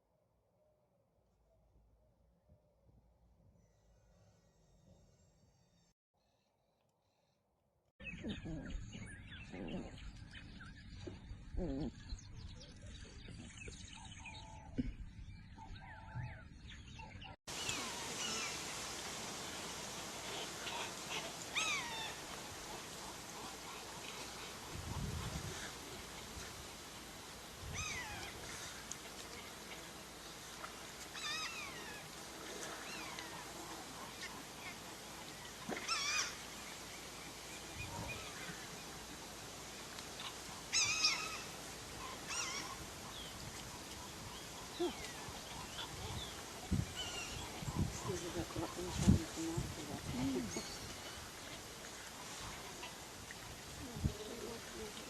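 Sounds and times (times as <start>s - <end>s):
birds chirping: 8.0s - 26.8s, 39.9s - 53.1s
steady hiss: 17.5s - 48.0s.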